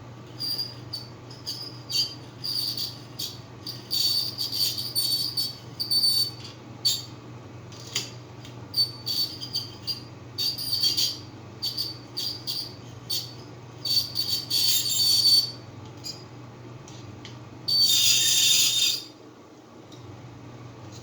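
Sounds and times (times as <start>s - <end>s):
hair clamp squeaking: 17.7s - 19.1s.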